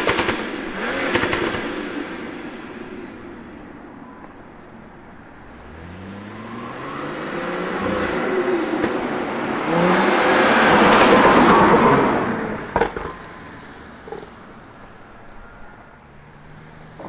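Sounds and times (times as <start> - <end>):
exhaust pops: 0.0 - 5.6, 7.7 - 15.2
car engine accelerating hard: 0.0 - 17.0.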